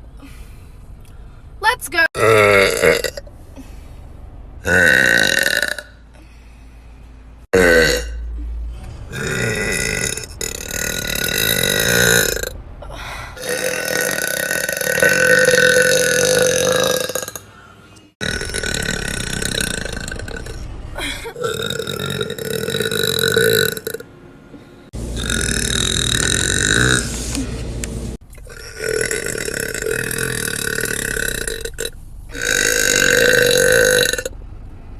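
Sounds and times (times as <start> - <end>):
woman burping deeply: 2.2 - 3.2, 7.6 - 8.2, 18.2 - 24.0, 28.5 - 34.3.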